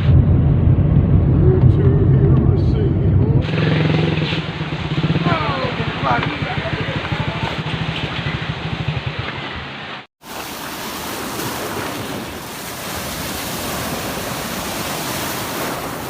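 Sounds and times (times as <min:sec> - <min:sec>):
engine running with fast pulse: 0:00.0 - 0:09.6
sea surf: 0:01.4 - 0:16.0.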